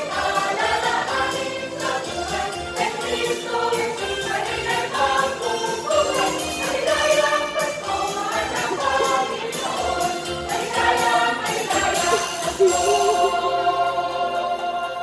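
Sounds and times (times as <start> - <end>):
choir singing a carol: 0.0 - 15.0
instrumental accompaniment: 0.0 - 15.0
bells jingling: 0.2 - 14.4.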